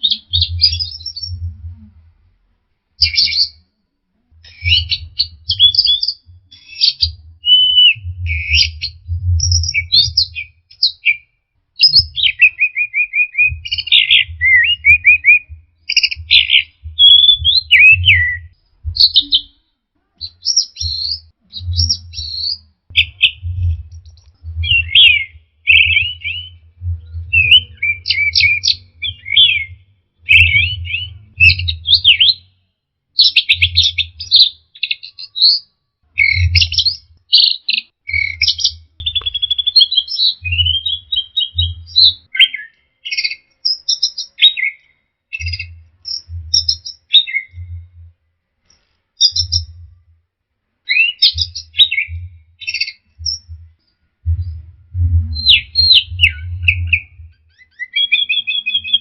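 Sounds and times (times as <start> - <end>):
bird singing trills and whistles: 0.0 - 2.0, 3.0 - 3.7, 4.4 - 19.6, 20.2 - 32.6, 33.2 - 48.1, 48.7 - 49.9, 50.8 - 59.0
low rumble: 0.4 - 2.6, 4.3 - 10.2, 13.5 - 19.5, 20.8 - 32.1, 45.6 - 46.7, 47.5 - 48.2, 49.4 - 50.2, 53.2 - 57.4.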